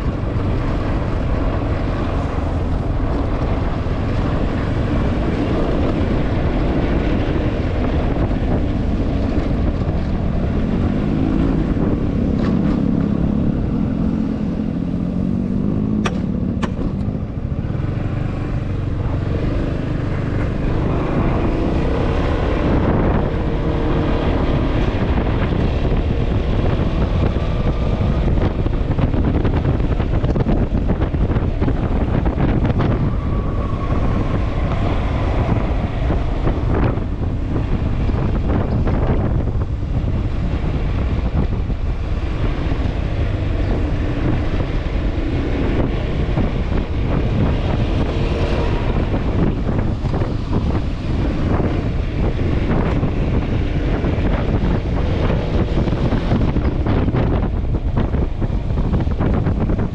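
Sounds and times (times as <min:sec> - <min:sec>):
wind rumble on microphone: 0:00.0 - 0:59.9.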